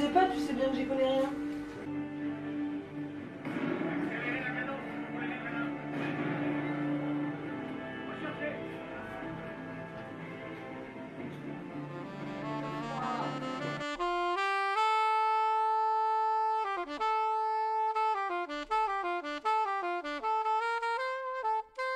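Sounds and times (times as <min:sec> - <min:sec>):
background music: 0:00.0 - 0:21.9
single instrument melody: 0:06.6 - 0:21.9.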